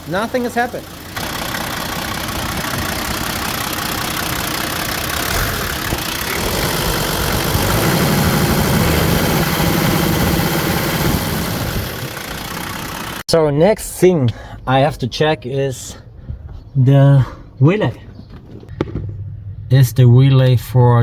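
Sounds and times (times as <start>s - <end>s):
diesel engine idling: 0.0s - 13.2s.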